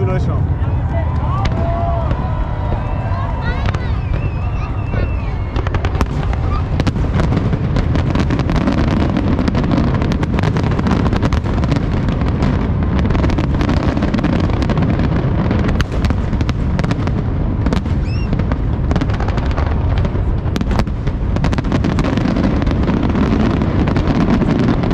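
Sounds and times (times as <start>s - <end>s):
fireworks booming: 0.0s - 24.9s
firework whistle: 0.6s - 7.6s, 17.7s - 19.6s
fireworks crackling pops: 1.1s - 24.9s.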